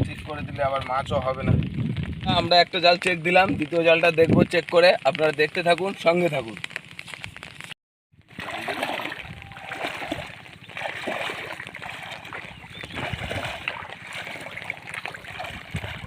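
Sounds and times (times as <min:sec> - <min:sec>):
water splashing and sloshing: 0:06.6 - 0:16.0.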